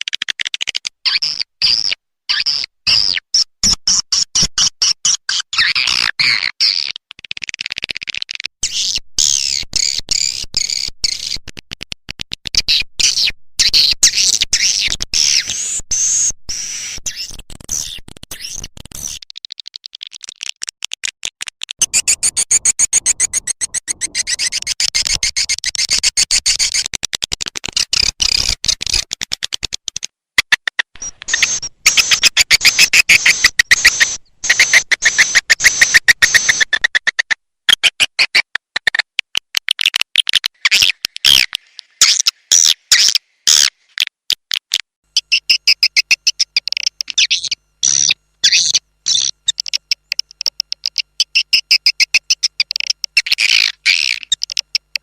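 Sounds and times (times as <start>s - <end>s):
rapid clicks: 17.5s - 42.0s, 47.8s - 55.0s
swiftlets twittering and chirping: 21.8s - 26.9s, 31.0s - 37.2s, 45.2s - 55.0s.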